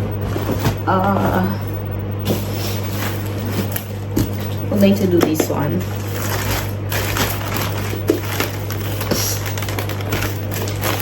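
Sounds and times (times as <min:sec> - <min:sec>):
steady low hum: 0:00.0 - 0:11.0
gift packaging rustling: 0:02.3 - 0:11.0.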